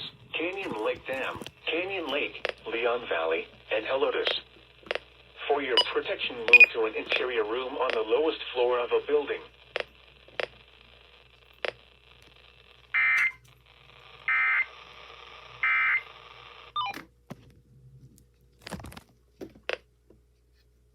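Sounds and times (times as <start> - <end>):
radio hiss: 0.0 - 13.0.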